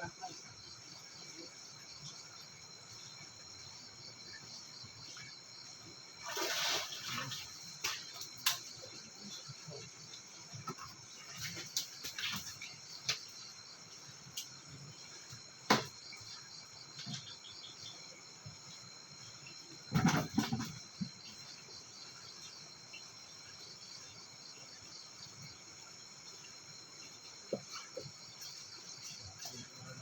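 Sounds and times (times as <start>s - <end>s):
crickets chirping: 0.0s - 30.0s
knocks and rustles: 19.9s - 21.2s.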